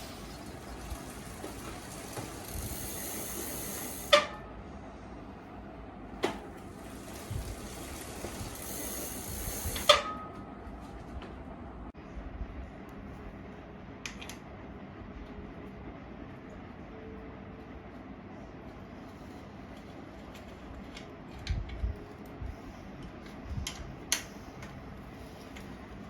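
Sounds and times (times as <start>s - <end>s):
bicycle brake squeal: 0.0s - 4.4s, 7.0s - 10.2s
brake pads hissing on rotor: 0.0s - 4.4s, 6.6s - 10.2s.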